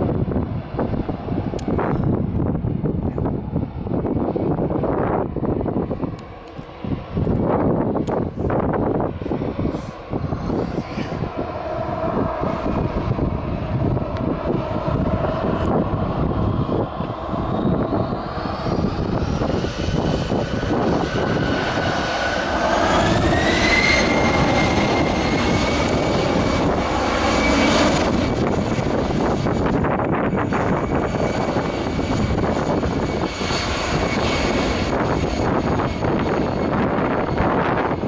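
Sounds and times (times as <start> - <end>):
wind on microphone: 0.0 - 38.0
jet engines spooling up: 1.0 - 38.0.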